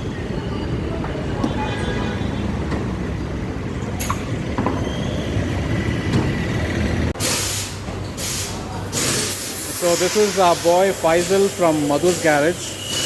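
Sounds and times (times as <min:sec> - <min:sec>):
compressed air blast hissing: 0:07.2 - 0:12.7.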